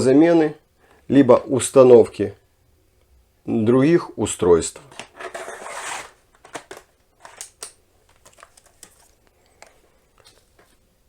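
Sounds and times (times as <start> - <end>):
laptop sliding scrape: 5.1 - 6.2.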